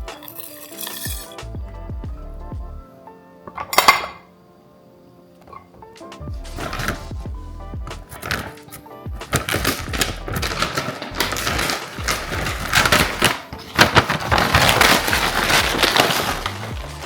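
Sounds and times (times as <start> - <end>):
package crackling: 6.6 - 7.1, 7.9 - 17.0.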